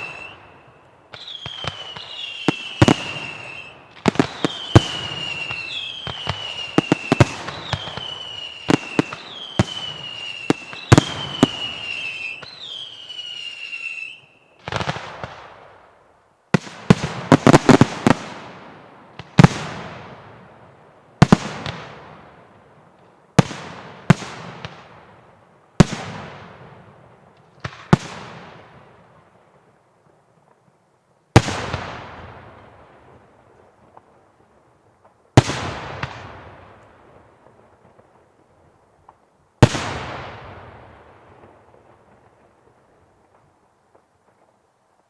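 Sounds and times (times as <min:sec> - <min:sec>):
fireworks bursting with bangs: 0:00.0 - 0:15.9, 0:16.6 - 0:20.5, 0:31.4 - 0:34.2, 0:34.9 - 0:44.5.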